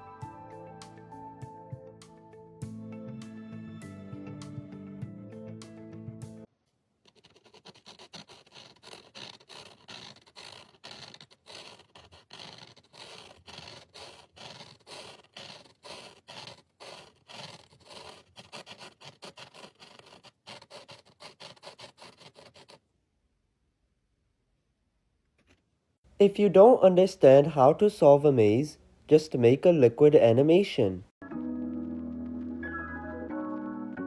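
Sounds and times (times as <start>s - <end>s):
rasping scraping strokes: 7.1s - 22.8s.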